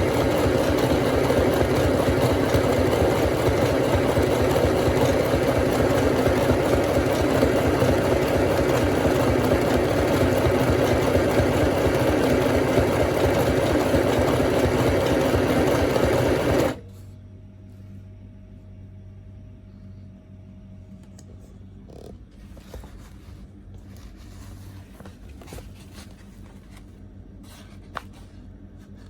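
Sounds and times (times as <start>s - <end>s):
sewing machine running: 0.0s - 16.8s.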